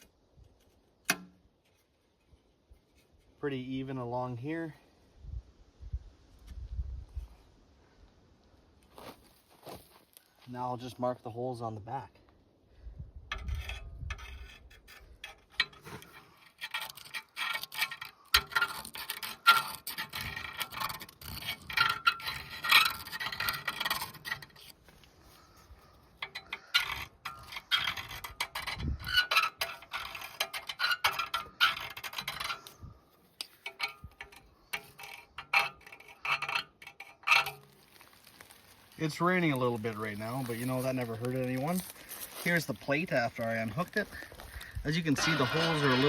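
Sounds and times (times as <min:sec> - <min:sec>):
metal scriber scratching on steel: 0:13.3 - 0:24.8, 0:26.2 - 0:32.8, 0:33.4 - 0:37.8, 0:44.9 - 0:46.0.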